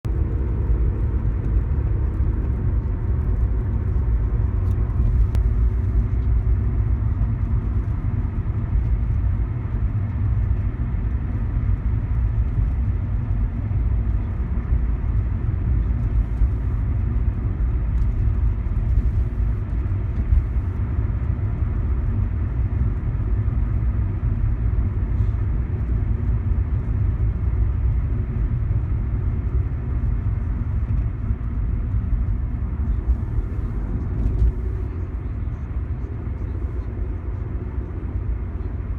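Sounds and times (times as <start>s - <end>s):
car engine low rumble: 0.0s - 38.9s.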